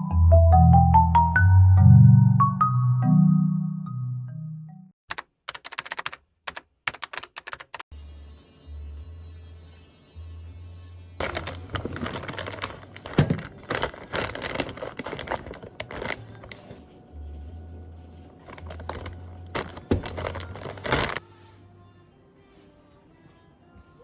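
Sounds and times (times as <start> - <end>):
crinkling and rustling: 11.2 - 21.2
faint low hum: 11.2 - 22.0.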